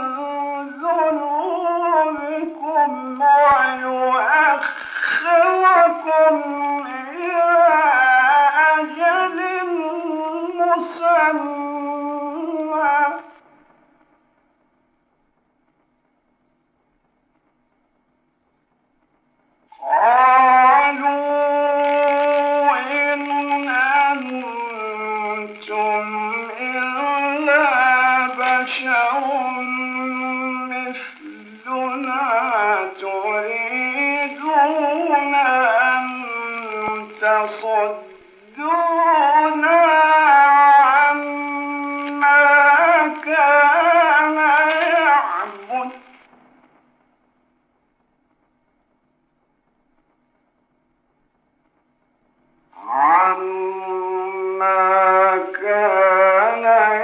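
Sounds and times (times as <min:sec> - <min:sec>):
man chanting: 0:00.0 - 0:13.4, 0:19.8 - 0:46.2, 0:52.8 - 0:57.0.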